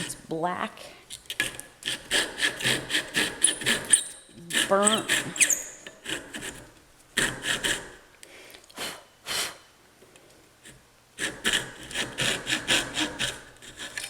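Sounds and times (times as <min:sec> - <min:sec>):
hand tool scraping wood: 0:00.0 - 0:00.2, 0:01.2 - 0:08.0, 0:10.6 - 0:14.0.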